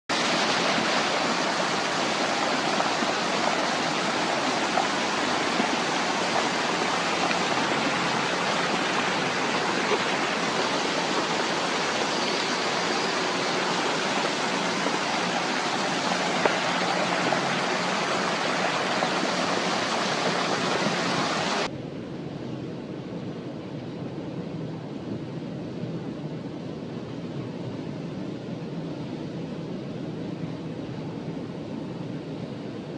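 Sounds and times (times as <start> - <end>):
heavy rain hissing: 0.1 - 21.7.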